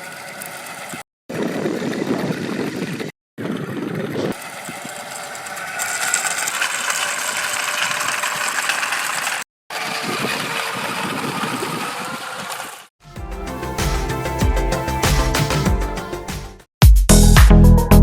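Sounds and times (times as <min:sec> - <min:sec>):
toy electric motor whirring: 0:00.0 - 0:01.5, 0:03.5 - 0:12.9.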